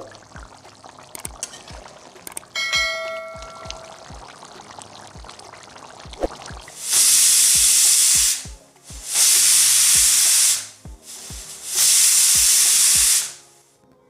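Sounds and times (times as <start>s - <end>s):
pressure cooker whistling: 6.8s - 8.4s, 9.0s - 13.4s.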